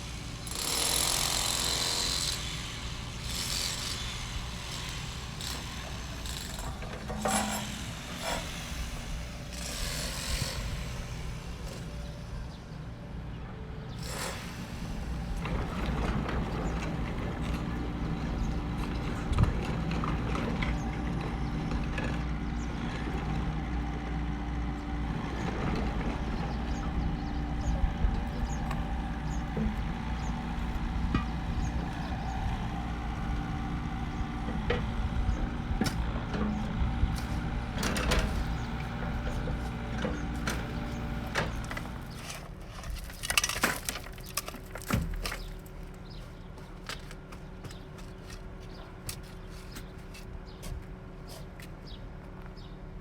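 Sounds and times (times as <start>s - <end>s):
heavy machinery engine running: 0.0s - 49.2s
knocks and clanks: 25.1s - 32.7s, 34.2s - 46.2s.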